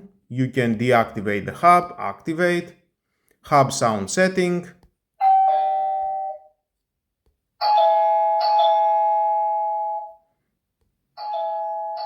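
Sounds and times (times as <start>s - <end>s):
electronic doorbell chime: 5.2s - 6.6s, 7.6s - 10.3s, 11.2s - 12.0s.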